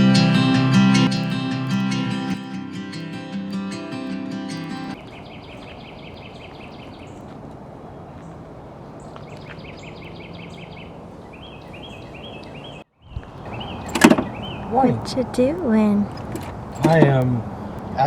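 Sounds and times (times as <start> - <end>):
outdoor background noise: 4.5 - 18.0
bird chirping rapidly: 5.0 - 18.0.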